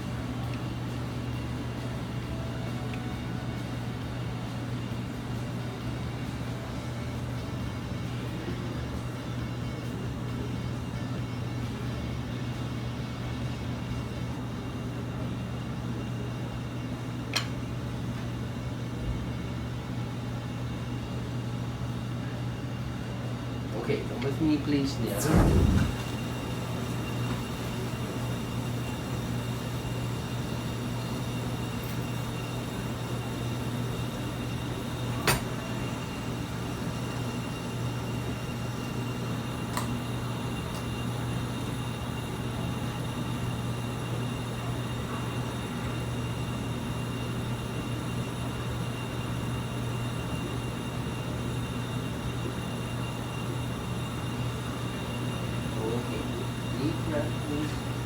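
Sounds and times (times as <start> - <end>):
low machine hum: 0.0 - 58.0
faint high whine: 24.9 - 58.0.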